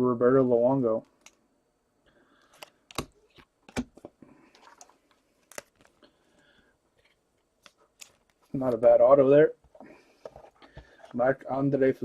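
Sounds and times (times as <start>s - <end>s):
soft rustling of cards: 0.8s - 12.0s
cards clicking and tapping: 2.4s - 4.2s.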